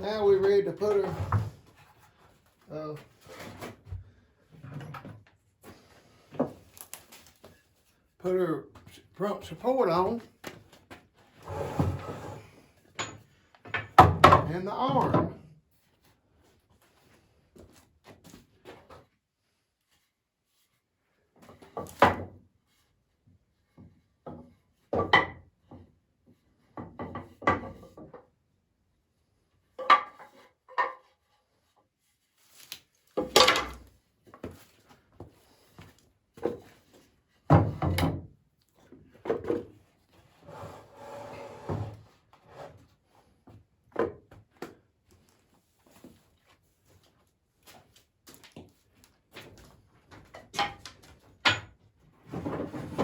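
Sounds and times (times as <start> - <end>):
wood scraping on wood: 11.3 - 12.6, 40.1 - 42.8.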